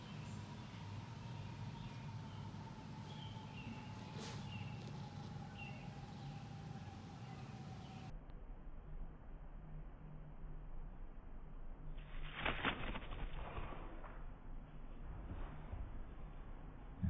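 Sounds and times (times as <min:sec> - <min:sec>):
small bird chirping: 0:00.0 - 0:08.1
steady low hum: 0:00.0 - 0:17.0.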